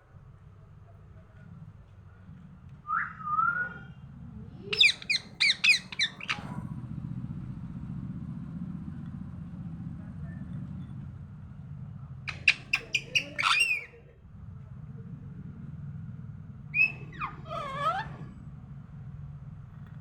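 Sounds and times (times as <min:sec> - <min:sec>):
parrot sharp chirps: 0:04.7 - 0:06.6, 0:12.3 - 0:13.9, 0:16.8 - 0:18.1
parrot gliding whistle: 0:04.8 - 0:06.6, 0:16.8 - 0:18.2.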